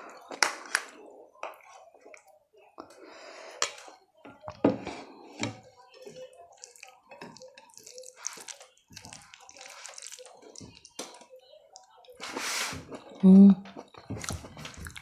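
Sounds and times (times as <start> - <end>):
person chewing with wet mouth sounds: 5.3 - 15.0.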